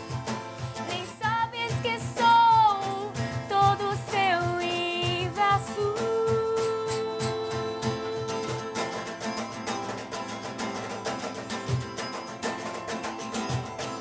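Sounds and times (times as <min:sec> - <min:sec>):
hand percussion: 0:00.0 - 0:14.0
plucked-string accompaniment: 0:00.0 - 0:14.0
person singing: 0:00.8 - 0:09.4.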